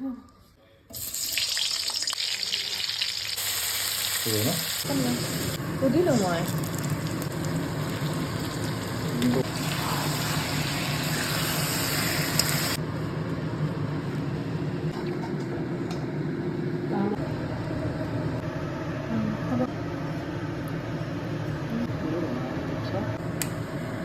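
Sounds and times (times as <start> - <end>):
oil sizzling in a pan: 1.0 - 12.8.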